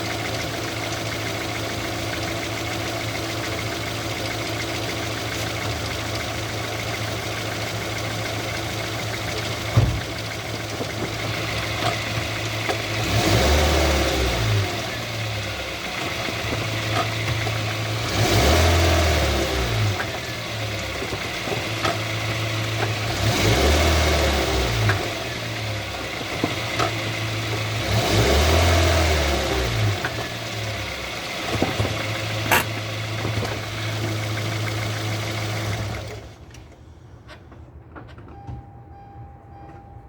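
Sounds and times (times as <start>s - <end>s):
car engine humming: 0.0s - 36.3s
brake clunk: 9.0s - 13.1s, 15.7s - 17.8s, 29.8s - 34.4s.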